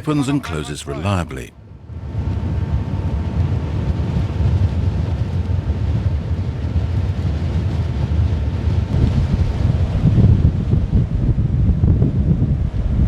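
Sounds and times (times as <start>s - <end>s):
wind buffeting microphone: 3.7s - 13.0s.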